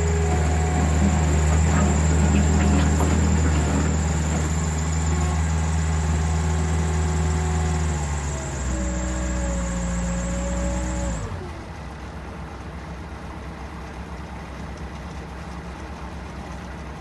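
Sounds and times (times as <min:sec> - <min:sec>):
skid steer engine revving and idling: 0:00.0 - 0:11.8.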